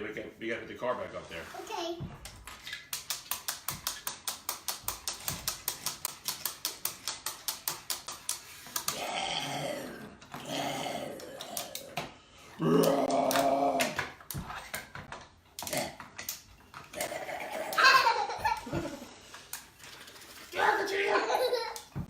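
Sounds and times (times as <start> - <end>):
person growling: 8.9 - 14.0, 17.0 - 18.0.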